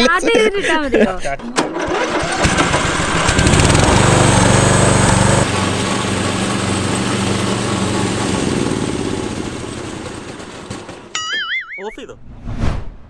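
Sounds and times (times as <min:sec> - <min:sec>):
riding lawn mower engine: 0:01.6 - 0:11.2.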